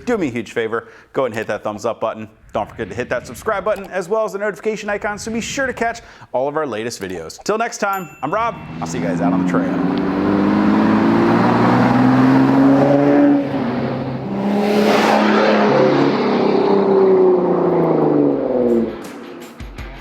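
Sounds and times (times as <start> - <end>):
car engine accelerating: 8.4 - 19.6.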